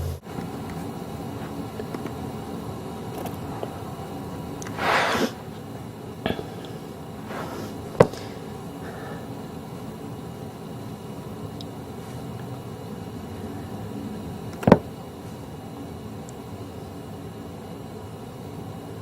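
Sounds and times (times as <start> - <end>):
steady low hum: 0.0 - 19.0.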